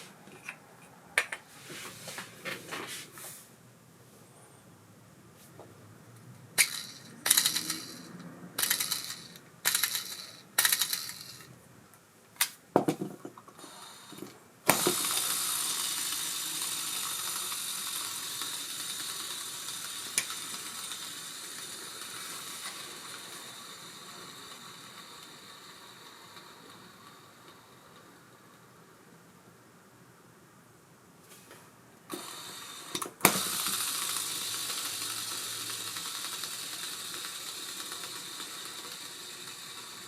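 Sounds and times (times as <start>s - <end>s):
fishing reel spinning: 6.6s - 11.4s, 14.8s - 22.6s, 33.4s - 40.0s.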